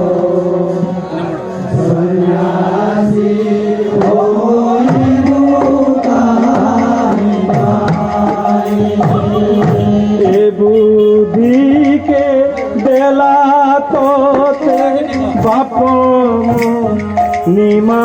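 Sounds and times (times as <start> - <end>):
droning melody line: 0.0 - 18.0
hand drum strokes: 11.4 - 18.0.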